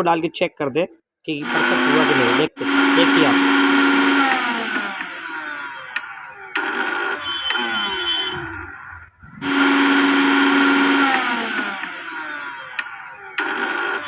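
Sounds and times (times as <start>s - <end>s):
mixer grinder motor whirring: 1.4s - 14.0s.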